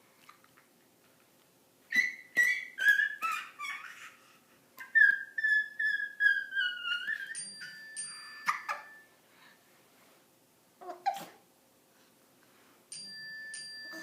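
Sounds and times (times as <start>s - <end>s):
baby squealing: 1.9s - 7.5s.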